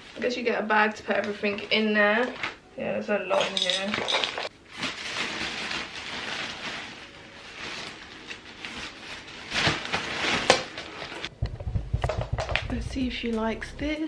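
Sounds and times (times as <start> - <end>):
crinkly fabric rustling: 0.0 - 2.6, 3.3 - 11.3
plastic packaging crinkling: 3.8 - 11.3.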